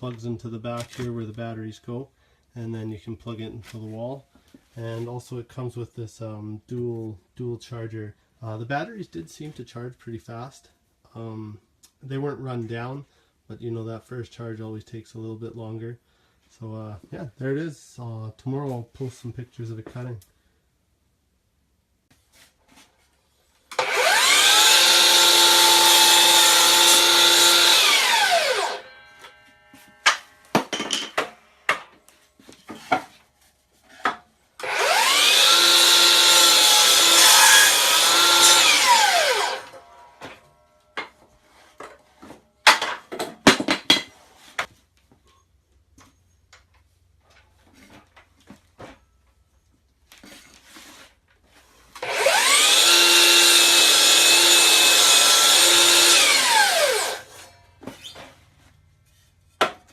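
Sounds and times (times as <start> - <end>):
miter saw motor whining: 23.7 - 30.6, 34.6 - 40.9, 52.0 - 57.5.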